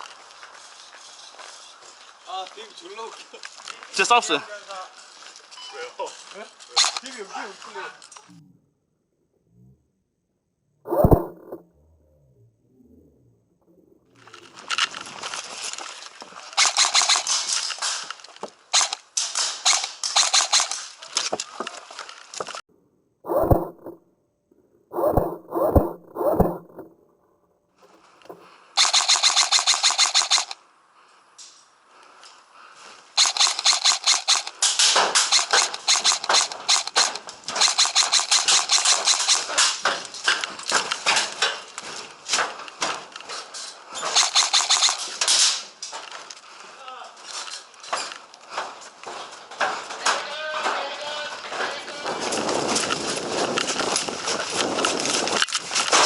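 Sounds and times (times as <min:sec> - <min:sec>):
wavering pitched sound: 0:10.9 - 0:13.1, 0:23.3 - 0:24.0, 0:24.9 - 0:26.9
airsoft guns firing bursts: 0:28.8 - 0:30.6, 0:33.2 - 0:34.5, 0:35.3 - 0:39.6, 0:44.2 - 0:45.1.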